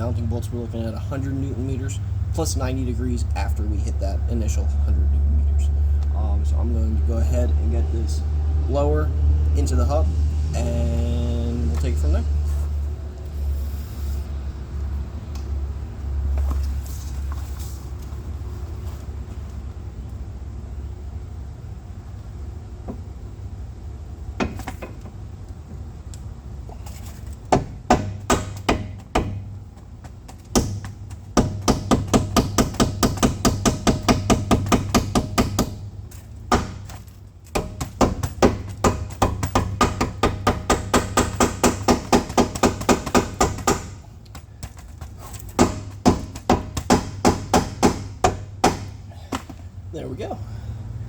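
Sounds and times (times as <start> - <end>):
steady low hum: 0.0 - 51.0
hammer striking metal: 45.6 - 49.1.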